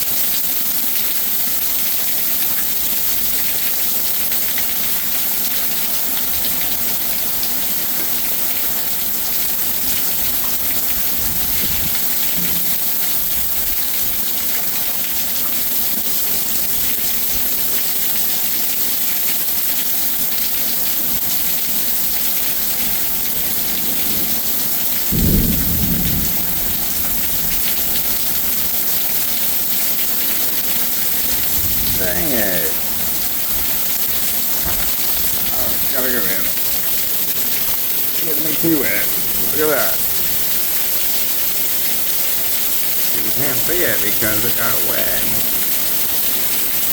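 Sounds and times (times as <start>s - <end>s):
heavy rain falling: 0.0s - 46.9s
low thunder rumble: 23.6s - 28.3s, 31.0s - 32.1s.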